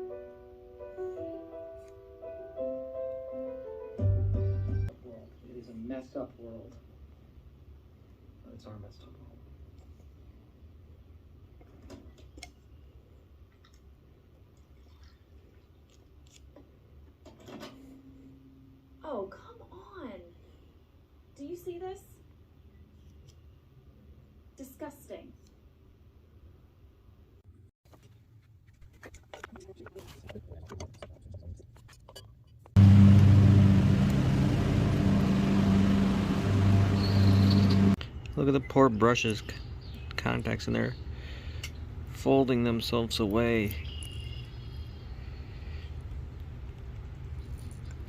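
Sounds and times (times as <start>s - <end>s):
steady low hum: 32.8s - 38.4s.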